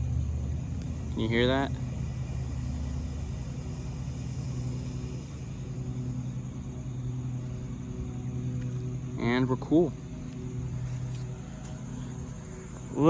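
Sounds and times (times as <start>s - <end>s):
hot metal hissing and bubbling underwater: 0.0s - 8.0s
low hum: 0.0s - 13.0s.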